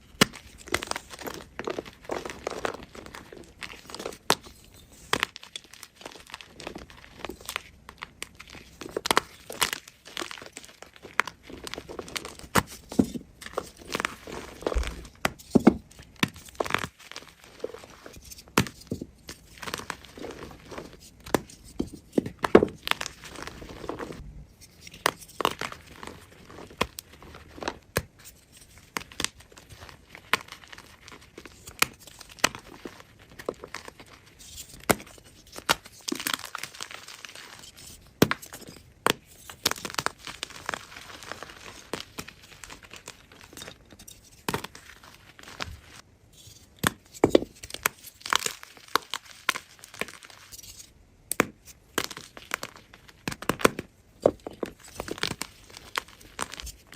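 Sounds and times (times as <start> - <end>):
chalk block being crushed: 0.0 - 24.2, 46.6 - 56.9.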